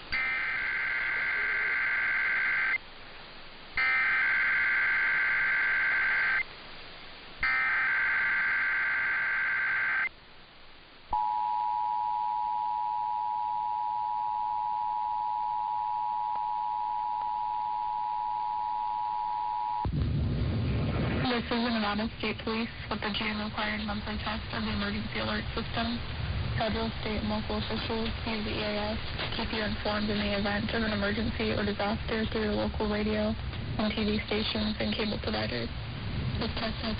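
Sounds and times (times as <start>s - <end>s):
two-tone attention signal: 11.1s - 19.9s.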